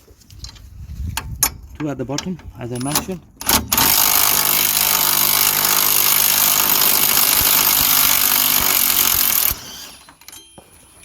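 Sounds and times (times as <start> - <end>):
impact wrench running: 3.5 - 10.1.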